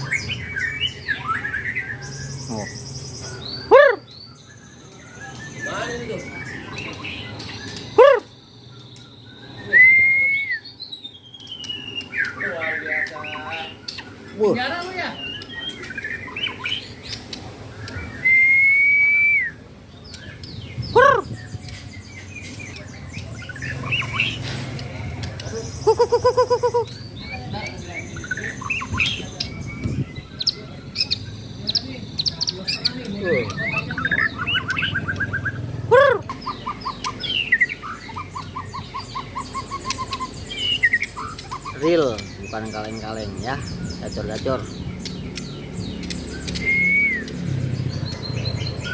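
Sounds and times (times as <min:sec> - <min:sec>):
birds chirping and whistling: 0:00.0 - 0:48.9
songbirds singing repeated notes: 0:00.0 - 0:48.9
loud arched bird call: 0:08.0 - 0:08.4, 0:20.9 - 0:21.4, 0:25.8 - 0:27.0
falling bird whistles: 0:09.4 - 0:10.7, 0:18.1 - 0:19.6, 0:46.6 - 0:47.4.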